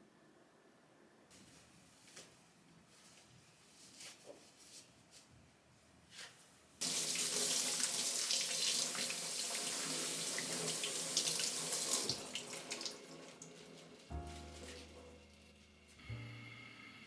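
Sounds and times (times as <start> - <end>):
water drips and splashes: 6.8 - 13.6
tap water running into sink: 6.8 - 14.0.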